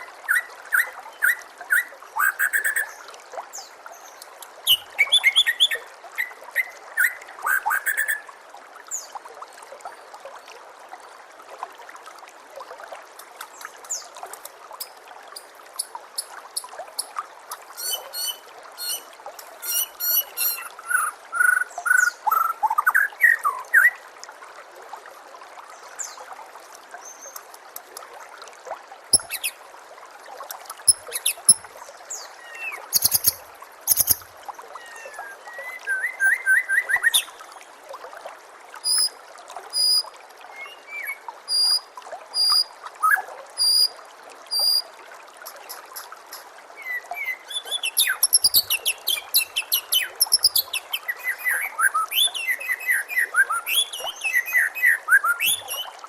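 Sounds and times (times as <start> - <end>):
trickle of running water: 0.0 - 56.0
bird singing whistles and trills: 0.3 - 3.0, 4.7 - 8.2, 17.8 - 19.0, 19.6 - 24.0, 29.1 - 29.6, 32.4 - 34.2, 34.8 - 37.3, 40.6 - 41.8, 42.4 - 43.9, 44.5 - 44.8, 46.8 - 55.9.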